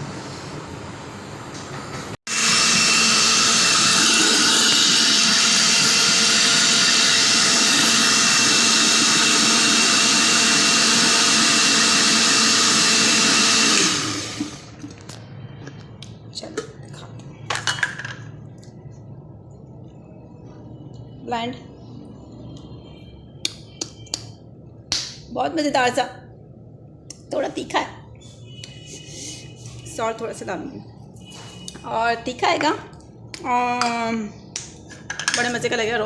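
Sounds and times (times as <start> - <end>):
electric blender grinding: 2.3 - 14.8.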